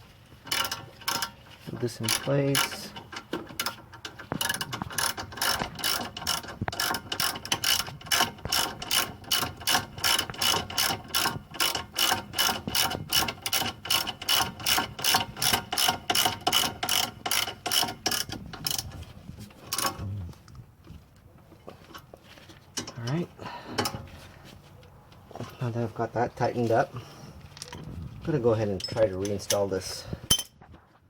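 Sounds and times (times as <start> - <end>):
socket ratchet clicking: 4.4 - 18.8.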